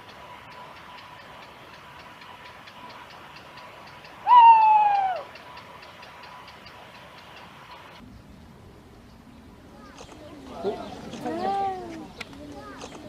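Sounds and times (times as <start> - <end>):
faint fast ticking: 0.0 - 8.0
hooting call: 4.1 - 5.5.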